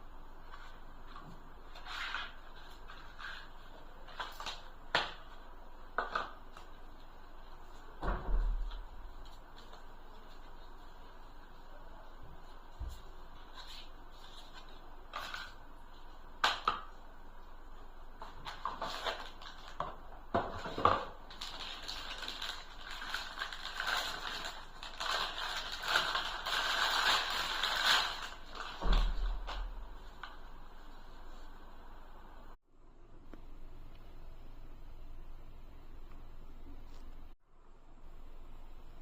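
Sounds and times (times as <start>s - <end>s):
crinkling and rustling: 18.2s - 31.5s.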